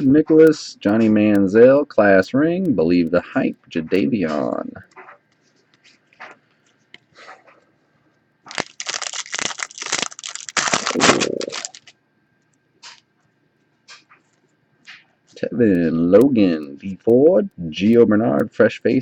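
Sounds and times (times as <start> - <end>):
wrapper tearing and crinkling: 8.5 - 12.0.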